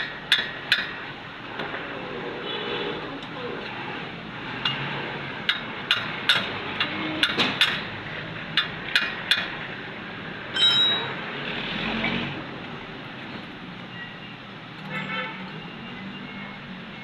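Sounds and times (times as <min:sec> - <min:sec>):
ringing metal clink: 0:10.6 - 0:11.2.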